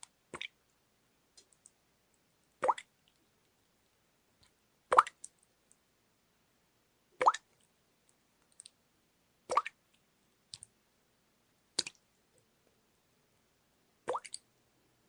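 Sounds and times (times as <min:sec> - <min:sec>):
water drops plopping into water: 0:02.6 - 0:02.9, 0:04.9 - 0:05.2, 0:07.2 - 0:07.4, 0:14.1 - 0:14.4.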